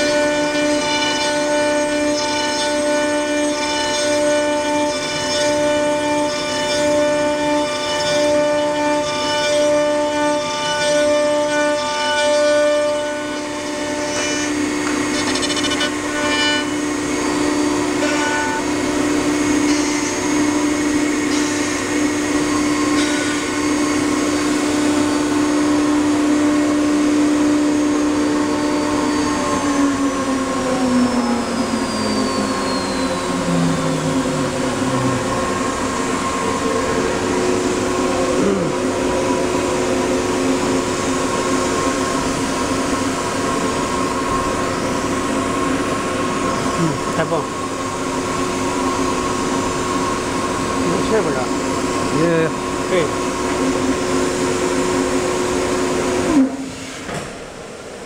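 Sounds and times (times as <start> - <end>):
router spindle whining: 0.0 - 56.7
machine equipment drone: 11.9 - 57.6.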